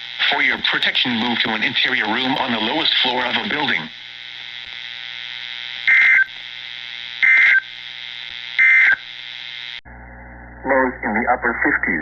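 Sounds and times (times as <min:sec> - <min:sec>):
radio hiss: 0:00.0 - 0:09.8, 0:10.6 - 0:12.0
buzzy digital data tones: 0:00.0 - 0:10.2.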